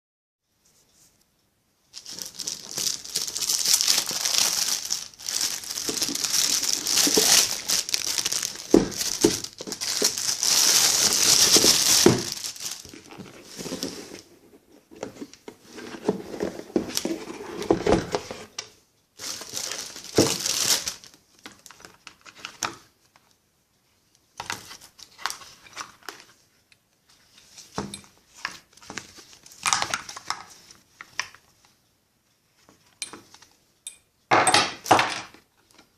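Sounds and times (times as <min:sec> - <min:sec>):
packaging crinkling and tearing: 0:02.0 - 0:14.2, 0:19.2 - 0:22.7.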